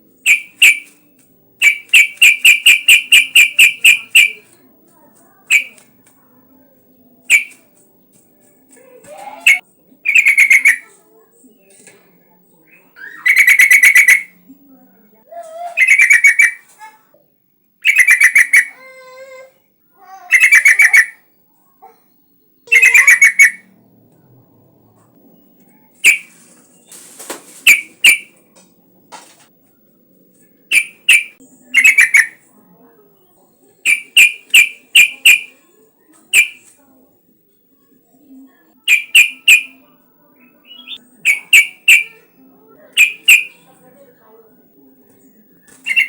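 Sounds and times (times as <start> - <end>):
bulbul singing: 0.1 - 4.6, 5.3 - 6.0, 7.0 - 11.0, 12.7 - 14.4, 15.4 - 16.8, 17.8 - 19.2, 20.0 - 21.3, 22.1 - 24.2, 25.4 - 26.4, 27.6 - 28.7, 30.7 - 32.5, 33.8 - 35.6, 36.2 - 36.8, 38.8 - 43.8, 45.2 - 46.0.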